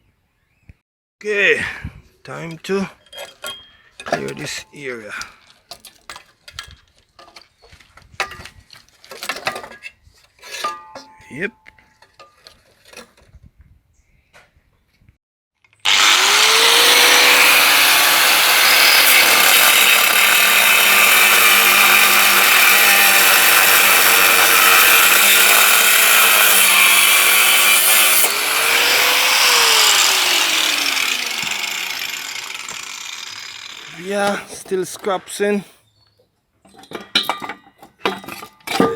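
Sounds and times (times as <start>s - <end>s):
power tool motor running: 15.8s - 34.1s.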